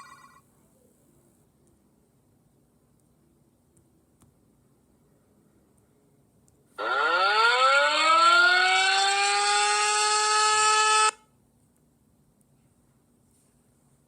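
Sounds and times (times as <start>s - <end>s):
siren winding up: 6.8s - 11.2s.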